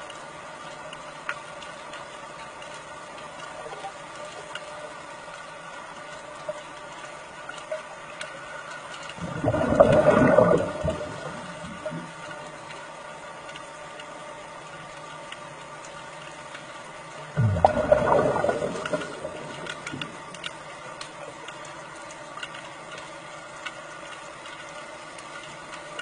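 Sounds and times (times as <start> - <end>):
water running in a cave: 0.0 - 26.0
rush of water: 9.1 - 12.2, 17.3 - 20.6.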